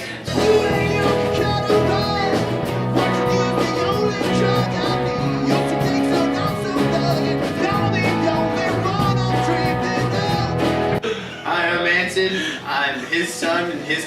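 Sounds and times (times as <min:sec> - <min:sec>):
rock song with electric guitars: 0:00.0 - 0:11.1.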